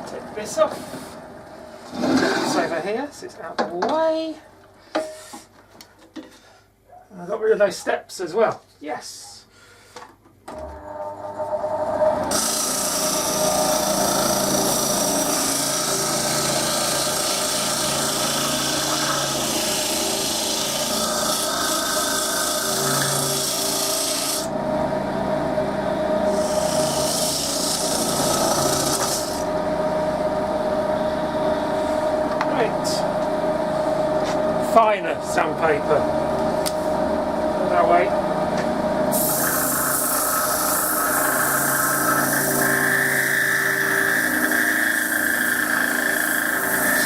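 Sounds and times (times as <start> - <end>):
wood lathe motor humming: 10.5 - 47.0.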